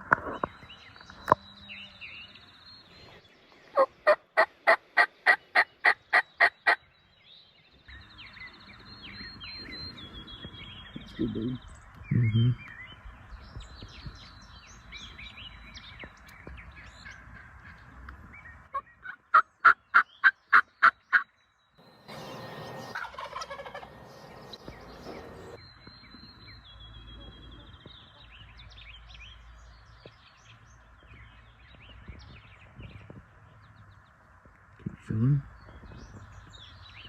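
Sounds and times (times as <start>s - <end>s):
small birds chirping faintly: 0.0s - 37.0s
rough noisy sound: 21.8s - 23.1s
turkey yelps: 22.8s - 25.5s.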